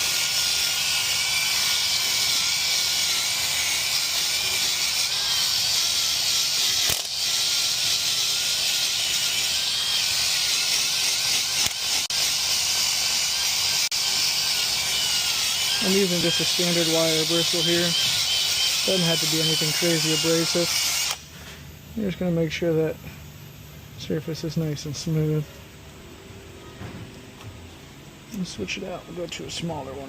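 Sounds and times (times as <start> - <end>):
power tool wire brush scrubbing metal: 0.0 - 21.2.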